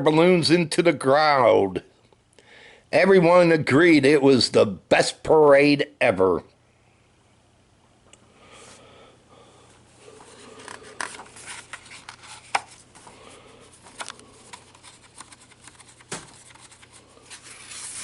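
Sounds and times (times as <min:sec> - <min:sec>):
paper pages rustling and turning: 0:10.3 - 0:18.0
paper snaps and taps: 0:13.9 - 0:16.8.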